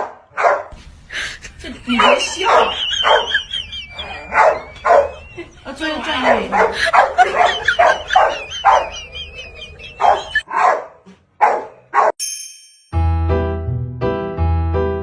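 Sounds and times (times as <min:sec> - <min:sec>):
dog barking and yipping: 0:00.0 - 0:00.8, 0:01.9 - 0:05.4, 0:06.0 - 0:12.2
dog whining: 0:02.0 - 0:05.5
piano music: 0:12.9 - 0:15.0.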